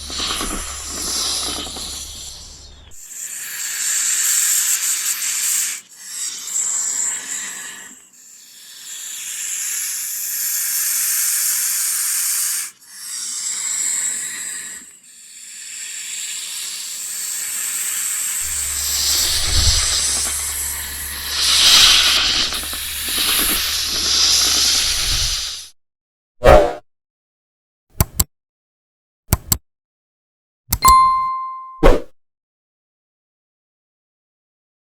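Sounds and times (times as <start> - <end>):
snake hissing: 0.0 - 25.7
low steady hum: 18.4 - 23.1.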